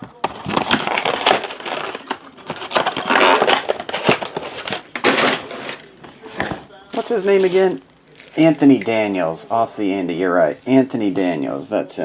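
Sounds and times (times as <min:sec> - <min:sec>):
wrappers tearing and crumpling: 0:00.2 - 0:05.8, 0:07.0 - 0:08.9.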